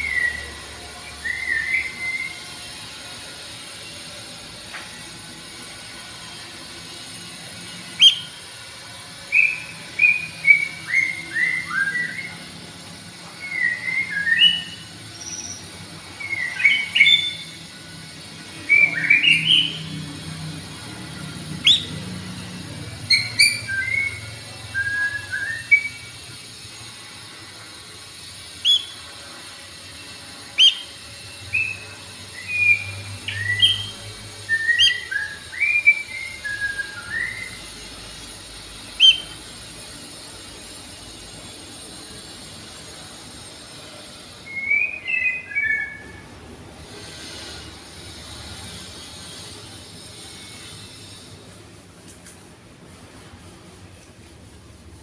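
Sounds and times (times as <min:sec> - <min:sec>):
bird singing whistled notes: 0:01.1 - 0:02.5, 0:07.8 - 0:08.5, 0:09.3 - 0:12.5, 0:13.3 - 0:17.7, 0:18.5 - 0:20.0, 0:21.6 - 0:22.0, 0:23.0 - 0:26.2, 0:28.6 - 0:29.0, 0:30.4 - 0:37.8, 0:38.4 - 0:39.5, 0:44.4 - 0:46.2.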